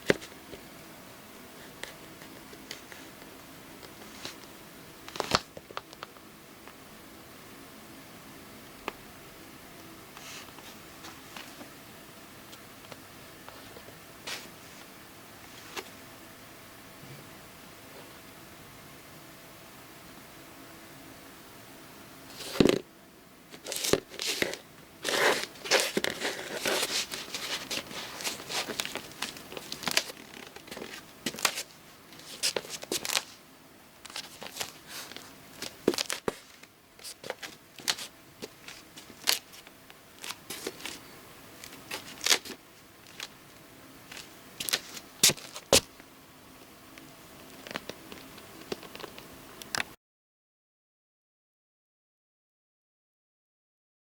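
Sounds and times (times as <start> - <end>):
crinkling and scraping handling noises: 1.6 - 6.2, 10.2 - 11.7, 12.8 - 16.0, 22.3 - 22.8, 23.5 - 33.4, 34.0 - 46.0, 47.4 - 49.3.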